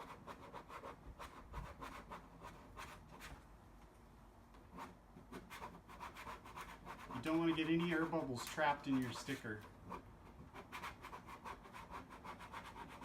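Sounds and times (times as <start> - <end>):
plastic card scraping over decal: 7.2 - 9.6.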